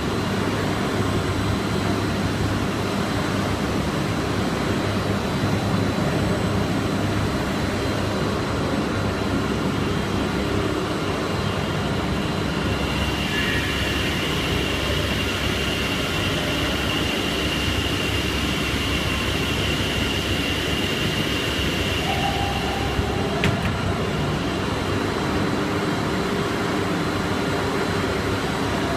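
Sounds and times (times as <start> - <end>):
machinery running with low hum: 0.0 - 28.9
high whine: 9.2 - 27.3.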